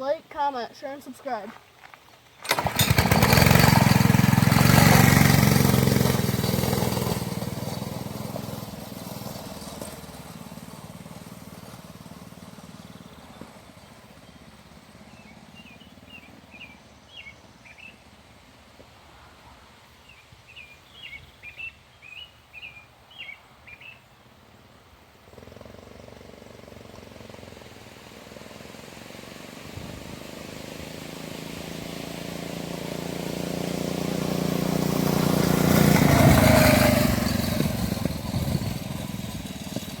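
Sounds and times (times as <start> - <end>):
mini bike engine running: 2.4 - 16.6, 25.2 - 40.0
birds chirping: 12.7 - 18.0, 20.0 - 24.3.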